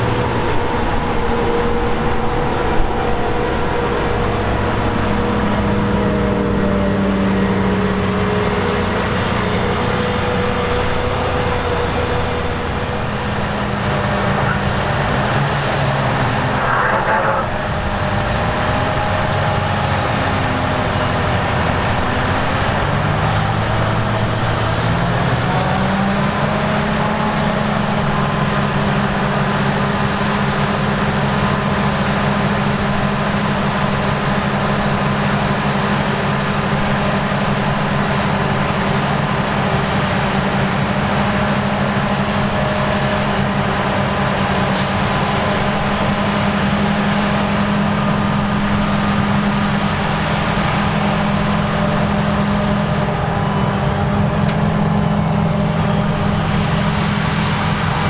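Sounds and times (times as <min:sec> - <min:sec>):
diesel engines running: 0:00.0 - 0:58.0
rush of noise: 0:11.3 - 0:21.2.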